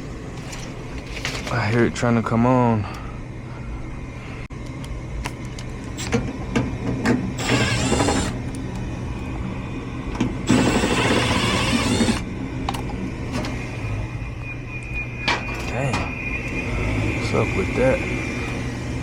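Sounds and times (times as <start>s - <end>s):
furnace motor hum: 0.0s - 19.0s
rushing gas noise: 10.4s - 19.0s.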